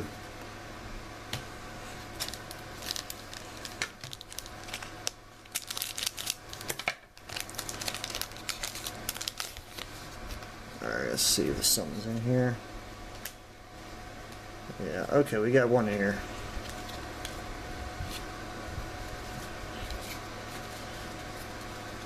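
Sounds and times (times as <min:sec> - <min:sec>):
wrapper tearing and crinkling: 0:02.1 - 0:10.4.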